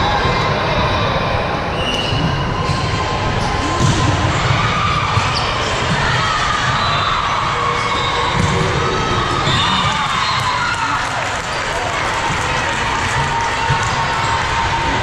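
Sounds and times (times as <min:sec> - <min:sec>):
crowd shouting and cheering: 0:00.0 - 0:15.0
sneakers squeaking on court: 0:05.1 - 0:06.0.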